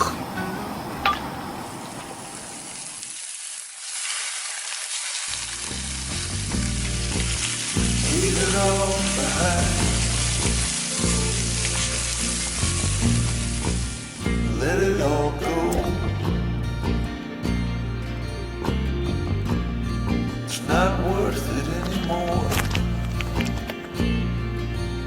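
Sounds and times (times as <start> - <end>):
food sizzling in a pan: 2.3 - 14.4
background music: 5.4 - 25.0.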